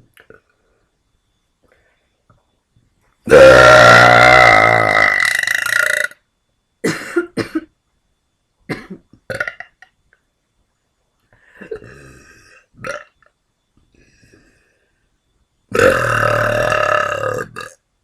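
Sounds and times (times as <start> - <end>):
person burping loudly: 3.3 - 6.2, 8.7 - 9.9, 11.6 - 13.2, 15.7 - 17.8.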